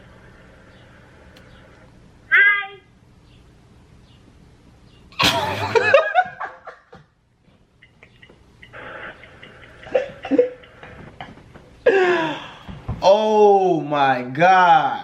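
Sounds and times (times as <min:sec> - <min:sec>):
person laughing: 0:05.2 - 0:06.9, 0:08.7 - 0:11.3.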